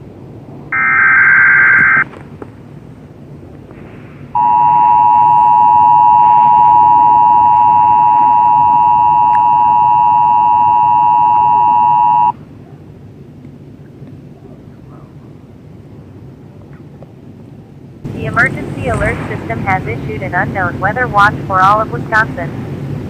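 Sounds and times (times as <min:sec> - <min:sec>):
two-tone emergency alert signal: 0:00.7 - 0:02.0, 0:04.4 - 0:12.3.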